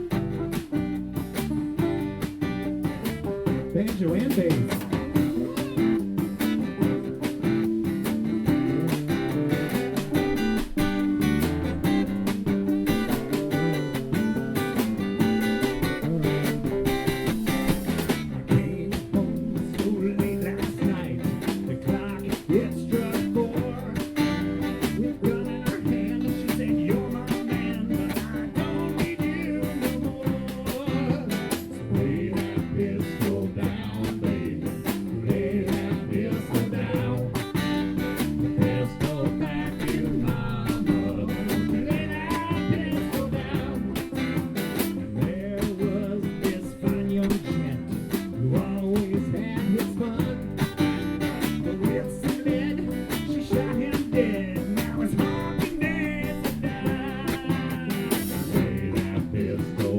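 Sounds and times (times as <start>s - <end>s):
guitar: 0.0s - 59.9s
live country band: 0.0s - 59.9s.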